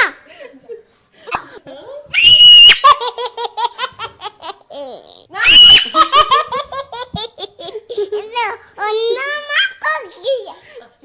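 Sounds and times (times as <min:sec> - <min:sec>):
baby laughing: 0:02.6 - 0:08.5.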